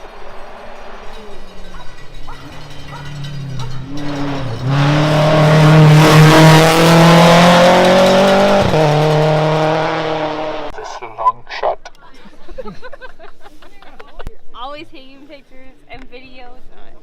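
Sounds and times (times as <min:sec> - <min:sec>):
rally car engine at speed: 0:00.0 - 0:11.3.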